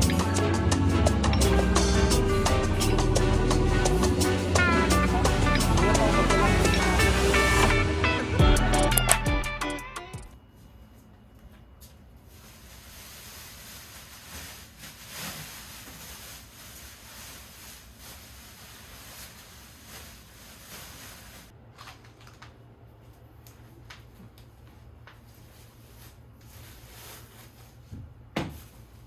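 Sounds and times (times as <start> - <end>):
soft rustles and clicks: 10.6 - 29.0.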